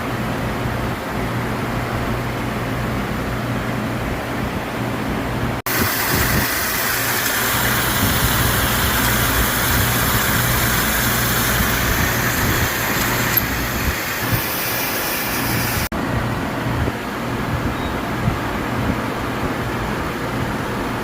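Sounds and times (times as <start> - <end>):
milling machine hum and hiss: 5.7 - 15.9.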